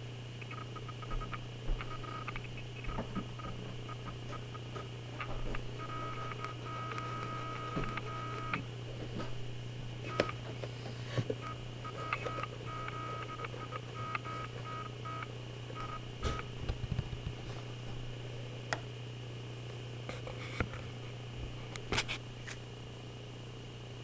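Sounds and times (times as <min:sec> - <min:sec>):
electrical hum: 0:00.0 - 0:24.0
clicks: 0:00.4 - 0:08.6, 0:10.1 - 0:10.4.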